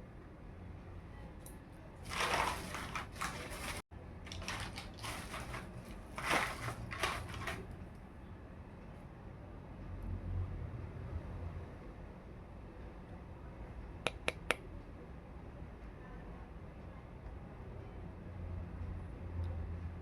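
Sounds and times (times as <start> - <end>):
crackly plastic packaging handling: 2.0 - 7.9.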